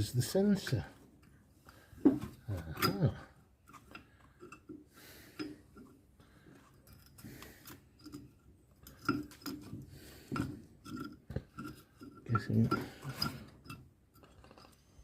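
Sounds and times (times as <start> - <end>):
tools and brake parts clicking: 6.7 - 14.8.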